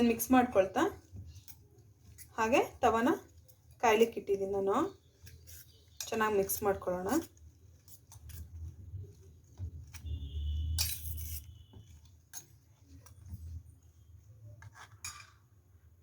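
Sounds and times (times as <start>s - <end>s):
spoon clinking against bowl: 10.6s - 12.5s.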